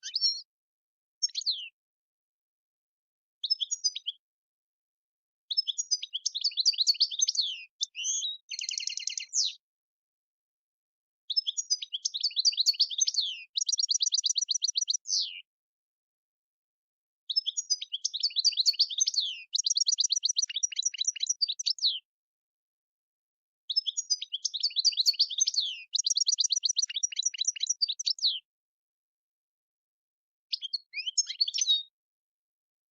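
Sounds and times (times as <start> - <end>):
goldfinch twittering song: 0.0 - 0.5, 1.2 - 1.8, 3.4 - 4.2, 5.5 - 9.6, 11.3 - 15.5, 17.3 - 22.1, 23.7 - 28.5, 30.5 - 32.0.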